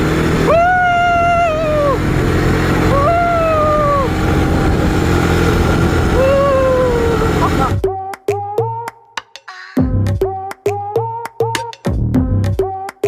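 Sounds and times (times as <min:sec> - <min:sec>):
motor vehicle engine running: 0:00.0 - 0:07.8
long high calls sliding down: 0:00.4 - 0:04.6.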